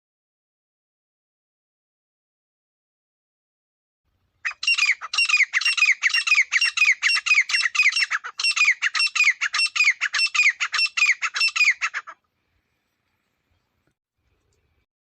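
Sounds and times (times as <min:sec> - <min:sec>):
francolin calling: 0:04.4 - 0:12.2.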